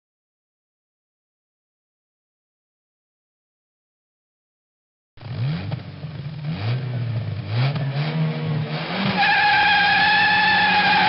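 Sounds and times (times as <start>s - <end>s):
motorcycle engine revving: 5.2s - 11.0s.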